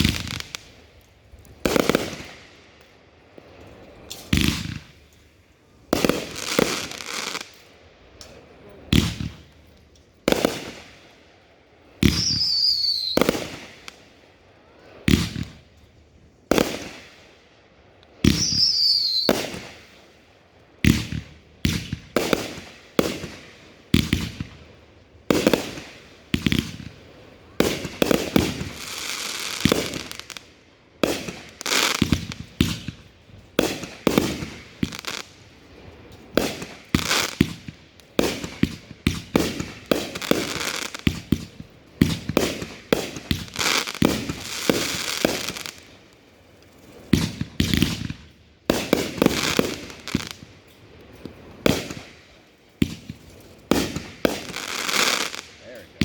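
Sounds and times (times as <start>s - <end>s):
firework crackling: 0.0s - 17.5s, 18.1s - 56.0s
falling whistles: 12.2s - 13.2s, 18.4s - 19.4s.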